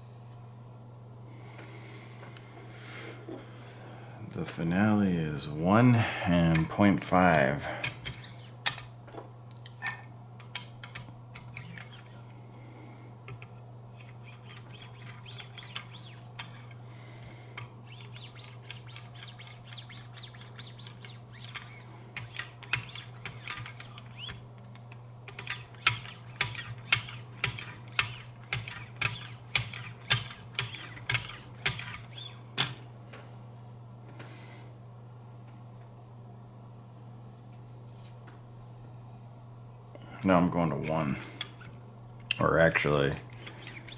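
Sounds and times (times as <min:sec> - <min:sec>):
soft scratchy sharpening strokes: 0:17.8 - 0:21.9.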